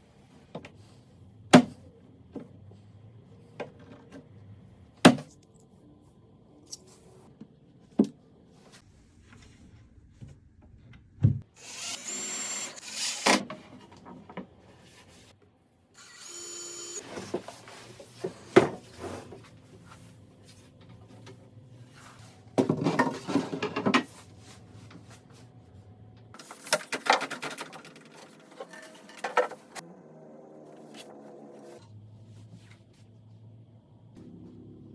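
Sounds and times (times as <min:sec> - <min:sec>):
power drill whining: 0:11.6 - 0:13.4, 0:16.0 - 0:17.3
scraping and handling noise: 0:17.0 - 0:29.8.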